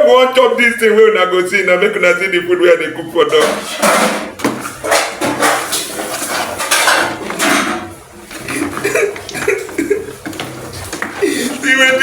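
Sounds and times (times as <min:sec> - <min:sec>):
metal utensil scraping cooking pot: 0:03.4 - 0:08.8.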